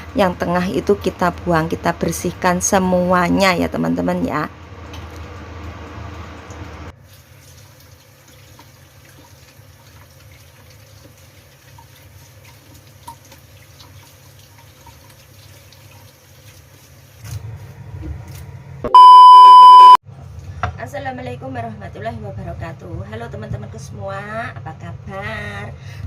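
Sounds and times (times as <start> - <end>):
tap water running into sink: 4.9 - 17.4
loud steady beep: 18.9 - 20.0
low hum: 18.9 - 20.0.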